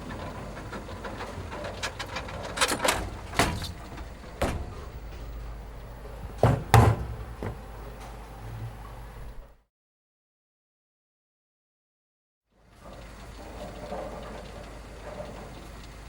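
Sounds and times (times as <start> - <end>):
steady low hum: 0.0 - 9.6
sharp knocks and thumps: 1.8 - 7.8.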